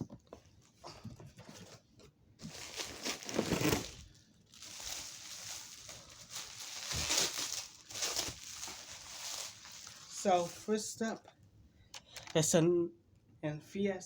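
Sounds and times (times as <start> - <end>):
packaging rustling and crinkling: 2.4 - 10.8.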